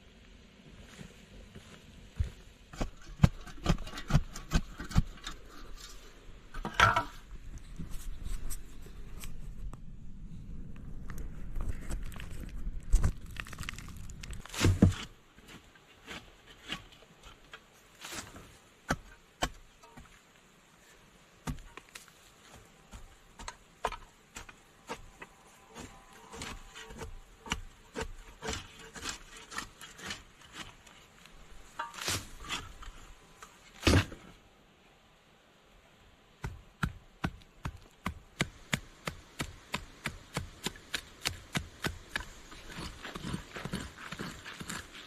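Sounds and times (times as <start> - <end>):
low rumble: 7.2 - 14.5.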